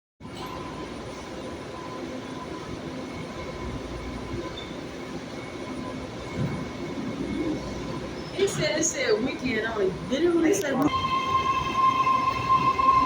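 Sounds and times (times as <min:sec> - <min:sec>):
train rumbling: 0:00.2 - 0:13.0.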